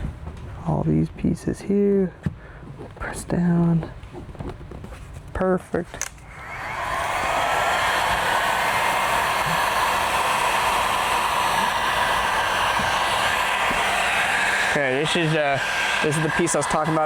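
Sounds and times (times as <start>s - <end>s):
heat gun blowing: 6.3s - 17.0s.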